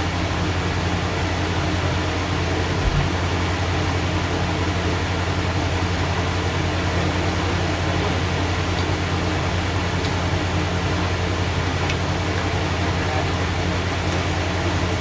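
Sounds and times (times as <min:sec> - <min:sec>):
low mechanical hum: 0:00.0 - 0:15.0
soft low thump: 0:02.8 - 0:03.2.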